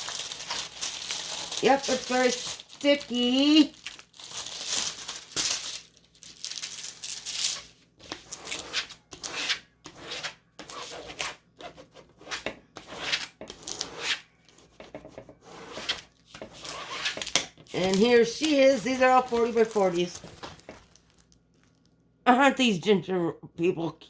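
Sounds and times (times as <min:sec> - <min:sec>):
plastic packaging tearing: 0:00.0 - 0:09.1, 0:17.1 - 0:21.9.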